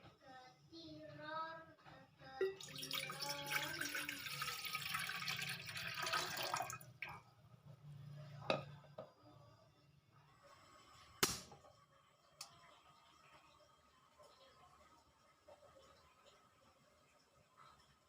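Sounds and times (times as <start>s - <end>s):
water pouring into container: 2.4s - 7.2s.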